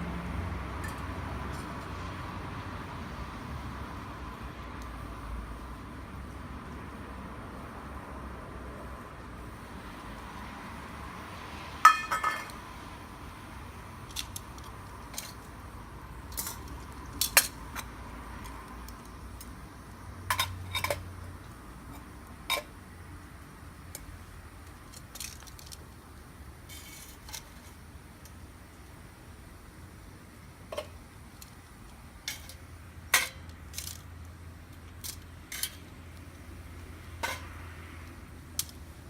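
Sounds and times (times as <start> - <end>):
low hiss: 0.0 - 39.0
metal camping gear clinking: 0.8 - 1.7, 11.8 - 12.6, 14.1 - 15.5, 16.3 - 19.6, 24.8 - 25.8, 32.2 - 34.1, 34.7 - 36.3, 37.2 - 37.5.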